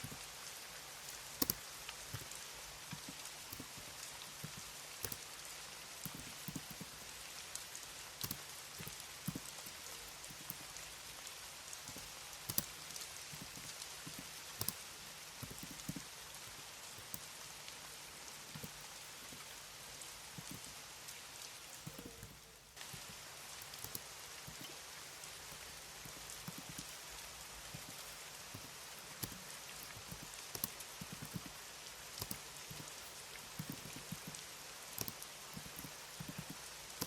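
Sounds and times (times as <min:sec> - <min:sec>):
computer keyboard keystrokes: 0:00.0 - 0:19.7, 0:20.3 - 0:20.8, 0:21.7 - 0:37.0
rain-like hiss: 0:00.0 - 0:37.0.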